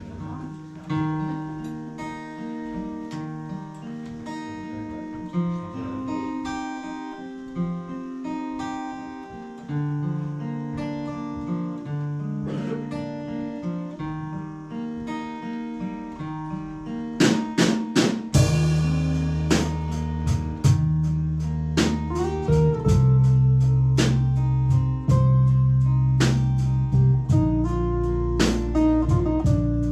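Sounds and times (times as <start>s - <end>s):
acoustic guitar picking: 0.0s - 29.9s
bass line: 18.4s - 29.9s.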